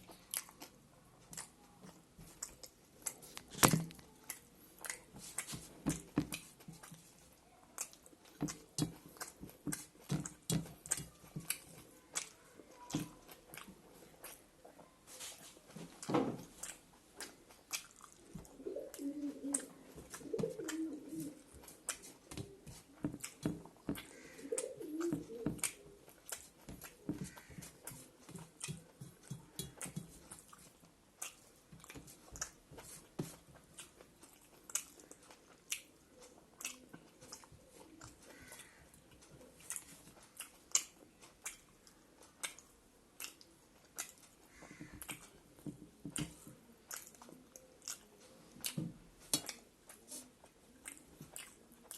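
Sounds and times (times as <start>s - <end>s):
chewing and mouth sounds: 0.0s - 51.9s.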